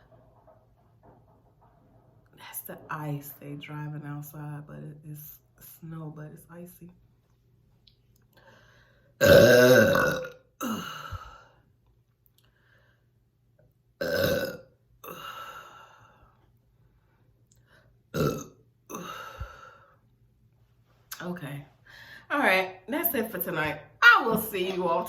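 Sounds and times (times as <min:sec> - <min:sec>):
person burping: 0:09.2 - 0:11.4, 0:14.0 - 0:15.8, 0:18.1 - 0:19.7.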